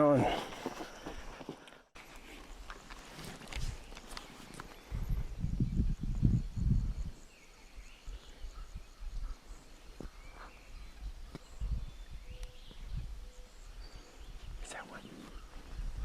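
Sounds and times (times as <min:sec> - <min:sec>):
faint bird chirps: 0:03.6 - 0:16.0.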